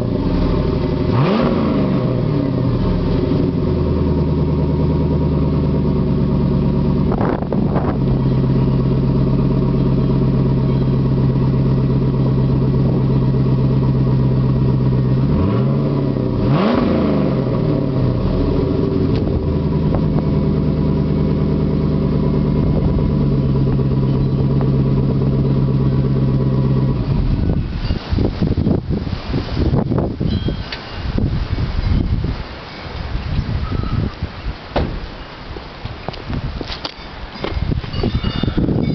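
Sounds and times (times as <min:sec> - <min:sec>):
car engine idling: 0:00.0 - 0:31.8.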